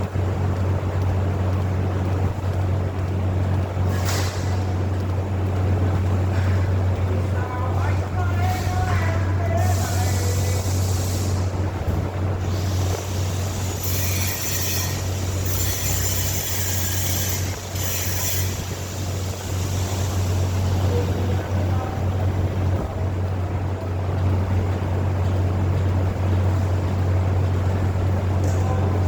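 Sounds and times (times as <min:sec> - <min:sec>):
low machine hum: 0:00.0 - 0:29.0
high hissing bursts: 0:09.6 - 0:11.6, 0:12.4 - 0:21.1.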